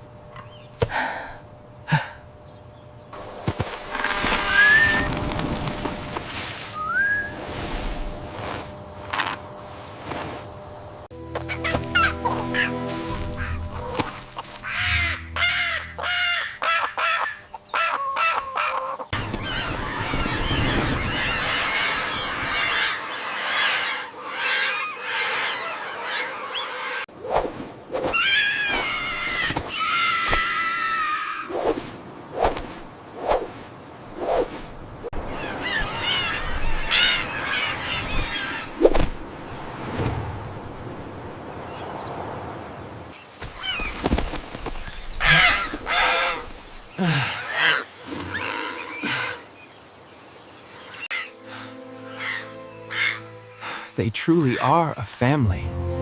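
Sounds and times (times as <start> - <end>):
parrot squawking: 14.6 - 19.0.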